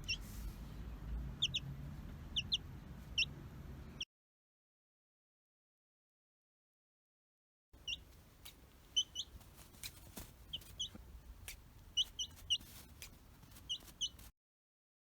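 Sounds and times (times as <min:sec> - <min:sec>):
chicks peeping: 0:00.0 - 0:00.4, 0:01.4 - 0:03.4, 0:07.8 - 0:14.3.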